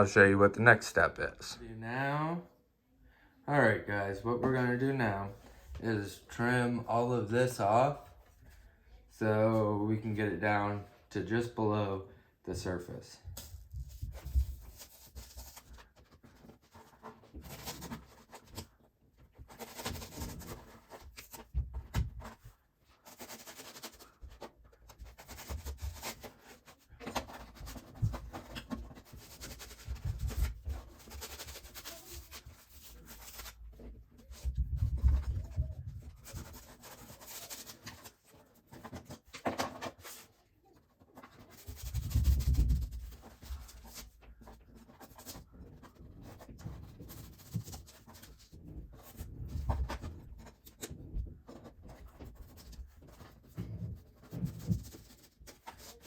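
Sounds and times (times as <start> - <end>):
razor blade scraping foam: 19.4 - 21.4, 23.0 - 33.6.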